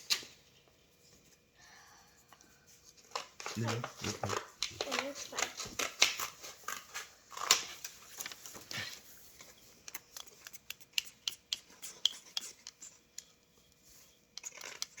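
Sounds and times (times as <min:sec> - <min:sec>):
paper rustling: 0:02.9 - 0:10.5.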